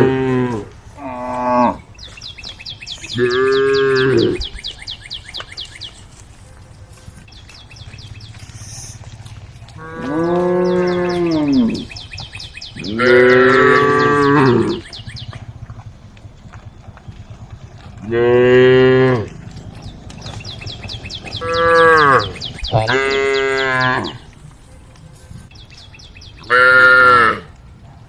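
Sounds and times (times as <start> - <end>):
cows mooing: 0.0 - 2.2, 2.8 - 4.6, 7.9 - 15.9, 16.9 - 24.3, 26.3 - 27.6.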